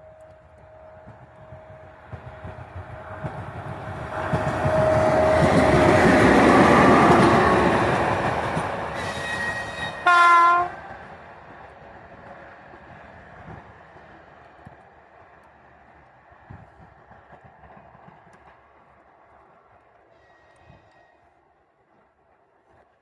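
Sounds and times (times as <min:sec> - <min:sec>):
locomotive wheels on rails: 0:00.0 - 0:23.0
locomotive horn blast: 0:09.1 - 0:10.9.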